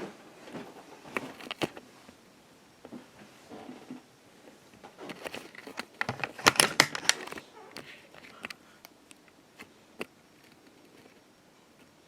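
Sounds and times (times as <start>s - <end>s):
handling clicks knocks and rustling: 0.5s - 1.8s, 4.8s - 9.3s.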